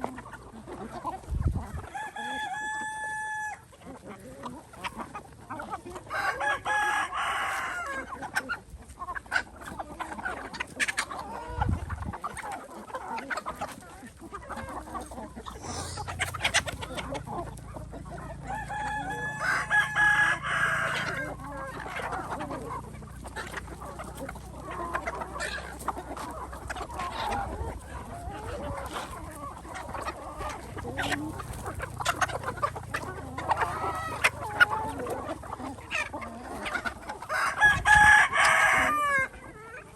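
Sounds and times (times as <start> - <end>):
chickens clucking: 0.0 - 39.9
rooster calls: 15.5 - 17.0.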